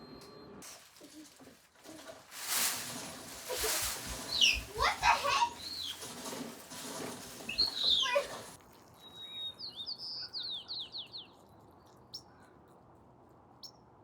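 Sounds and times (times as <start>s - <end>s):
songbird whistling and chirping: 4.3s - 4.8s, 5.6s - 6.0s, 7.5s - 8.3s, 9.0s - 11.4s.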